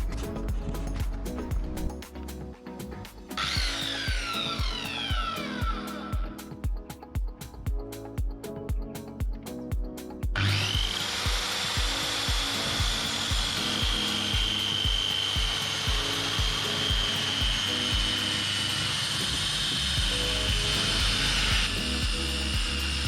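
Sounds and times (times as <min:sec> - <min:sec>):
background music with beat: 0:00.0 - 0:23.0
power saw cutting panel: 0:10.4 - 0:23.0.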